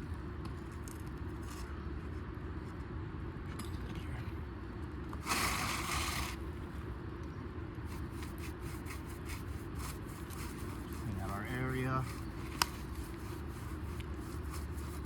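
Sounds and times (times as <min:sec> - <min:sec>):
harsh scraping on roof shingles: 0:05.2 - 0:06.4.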